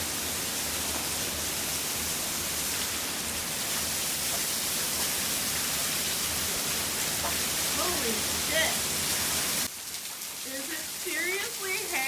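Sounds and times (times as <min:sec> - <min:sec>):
heavy rain pouring: 0:00.0 - 0:12.0.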